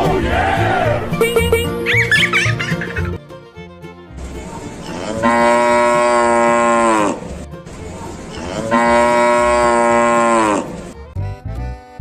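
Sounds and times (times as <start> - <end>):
cow mooing: 4.8 - 7.4, 8.3 - 10.8.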